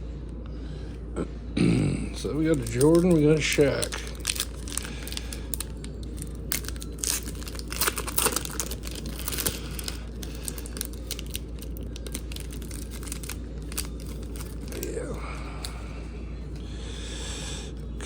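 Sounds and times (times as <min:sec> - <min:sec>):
card pack wrapper crinkling and tearing: 0:02.2 - 0:15.8.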